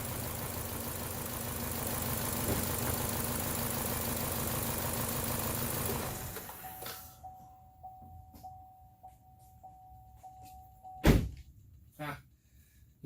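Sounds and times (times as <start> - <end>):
car engine idling rough: 0.0 - 6.7.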